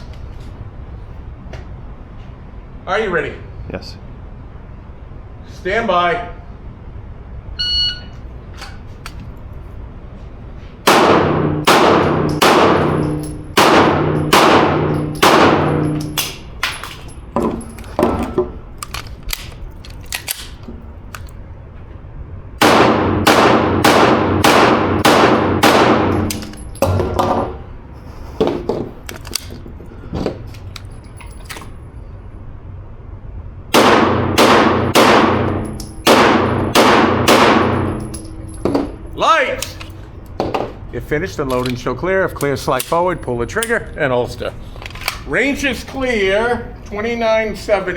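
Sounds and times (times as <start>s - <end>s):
shot timer beep: 7.6s - 8.2s
pistol shots: 10.8s - 21.3s, 22.6s - 27.6s, 33.7s - 40.0s
steel targets ringing: 10.9s - 18.7s, 23.0s - 27.8s, 34.1s - 40.3s.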